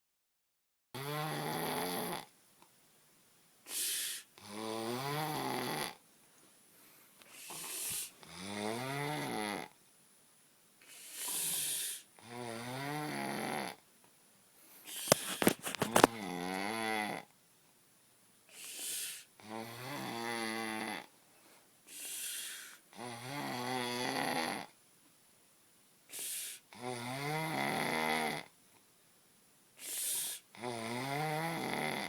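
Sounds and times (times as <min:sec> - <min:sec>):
person snoring heavily: 0:01.0 - 0:02.3, 0:03.7 - 0:06.0, 0:07.4 - 0:09.7, 0:10.9 - 0:13.8, 0:14.9 - 0:17.3, 0:18.5 - 0:21.1, 0:21.9 - 0:24.7, 0:26.1 - 0:28.5, 0:29.8 - 0:32.0
airy breath: 0:06.8 - 0:08.2, 0:10.8 - 0:12.1, 0:18.5 - 0:19.3, 0:21.9 - 0:22.8, 0:29.8 - 0:30.5.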